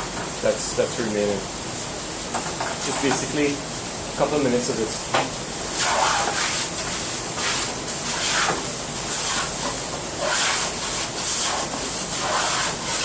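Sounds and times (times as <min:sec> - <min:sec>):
hand plane shaving wood: 0:12.2 - 0:13.0.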